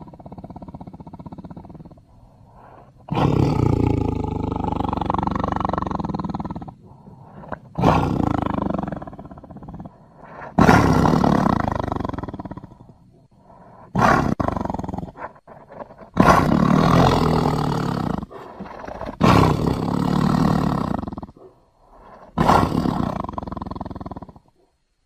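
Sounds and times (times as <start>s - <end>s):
creature roaring: 13.9s - 21.3s.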